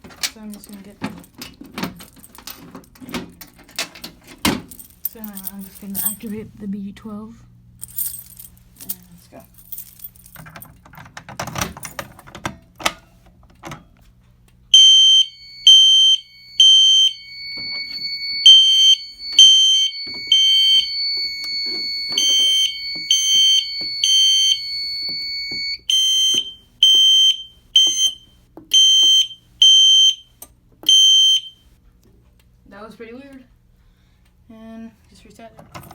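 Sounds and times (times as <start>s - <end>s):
fire alarm horn beeping: 14.7s - 31.7s.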